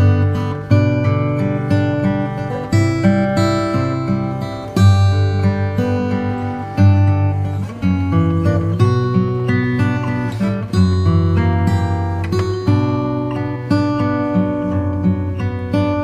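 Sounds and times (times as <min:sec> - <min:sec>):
strummed acoustic guitar chords: 0:00.0 - 0:16.0.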